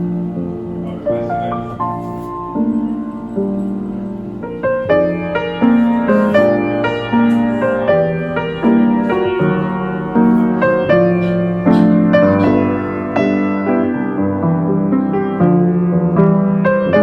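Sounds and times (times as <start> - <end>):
gentle piano melody: 0.0 - 17.0.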